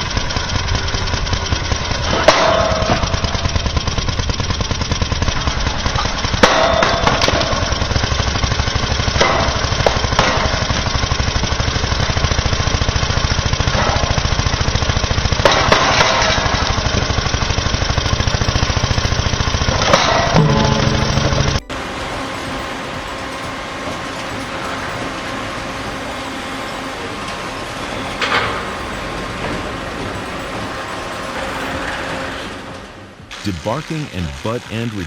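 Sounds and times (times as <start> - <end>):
heavy machinery pulsing: 15.9 - 22.5
sharp metal clanks: 20.4 - 21.8.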